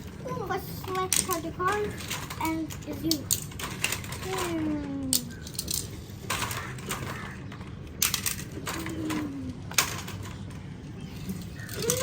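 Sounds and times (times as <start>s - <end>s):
toy cars clacking: 0.0s - 12.0s.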